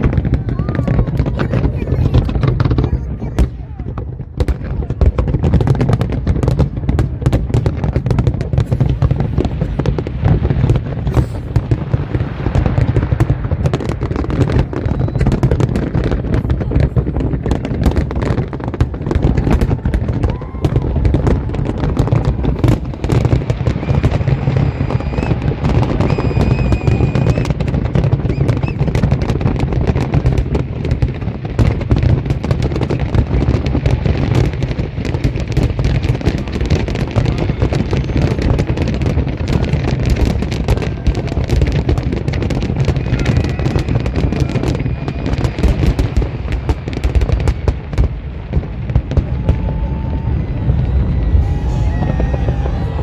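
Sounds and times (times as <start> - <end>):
fireworks bangs and crackling: 0.0 - 53.0
thin high whistle: 26.0 - 27.5.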